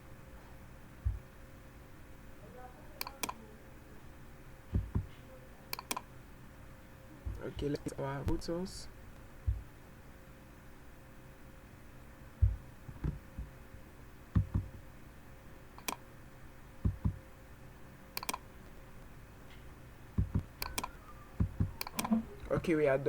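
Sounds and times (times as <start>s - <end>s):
faint steady hum: 0.0s - 23.0s
computer mouse clicking: 3.0s - 3.4s, 4.8s - 6.1s, 15.8s - 16.0s, 18.2s - 18.4s, 20.2s - 22.6s.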